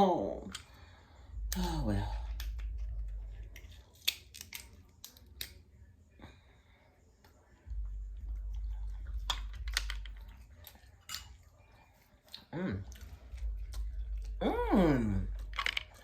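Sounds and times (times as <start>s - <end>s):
low rumble: 1.3s - 3.6s
crab shells cracking: 1.5s - 5.6s, 9.1s - 11.3s, 15.3s - 16.0s
chewing: 7.4s - 16.0s.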